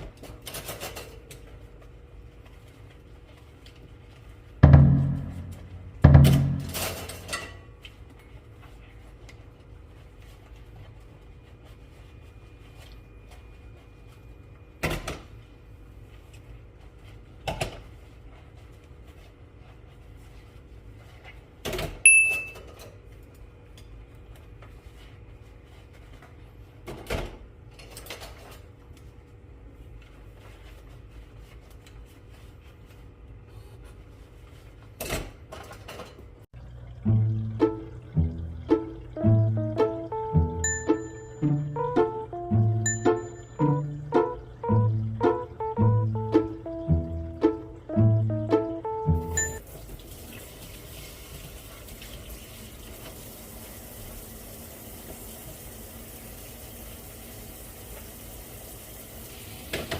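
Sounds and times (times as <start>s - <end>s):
steady hum: 4.2s - 7.4s, 36.6s - 49.6s
appliance doors and lids knocking: 4.6s - 7.0s.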